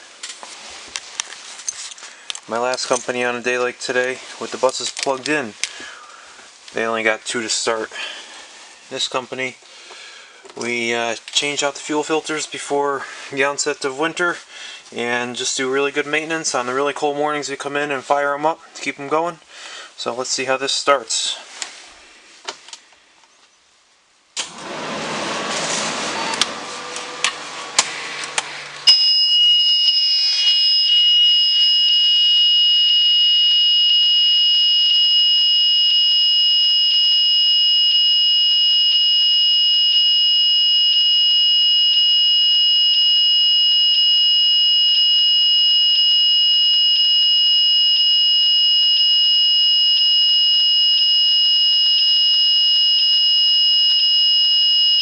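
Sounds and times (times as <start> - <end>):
rushing noise: 24.5 - 28.8
high-pitched warning buzzer: 28.9 - 55.0.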